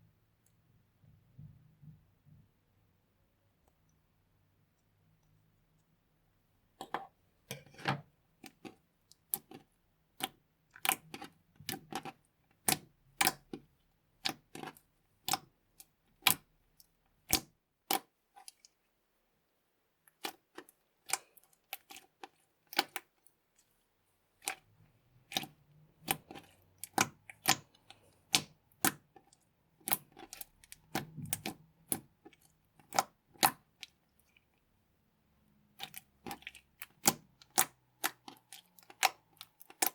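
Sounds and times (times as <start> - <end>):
slime clicking and popping: 25.3 - 27.7, 29.8 - 33.8, 35.8 - 39.9.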